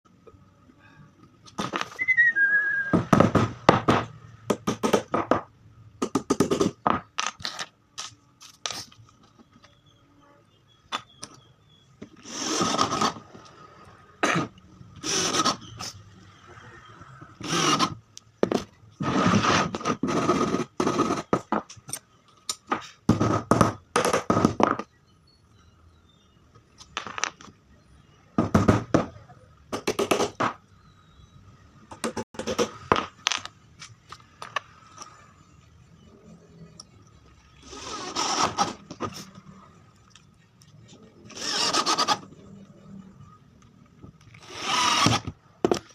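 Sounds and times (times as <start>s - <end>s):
knocking and scraping on wood: 3.0s - 7.6s, 17.1s - 21.9s, 22.6s - 24.9s.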